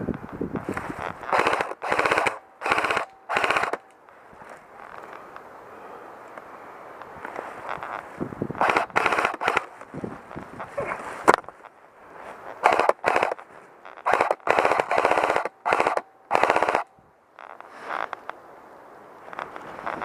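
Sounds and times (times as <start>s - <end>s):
airsoft guns automatic fire: 1.3s - 3.8s, 12.6s - 13.4s, 14.1s - 16.9s.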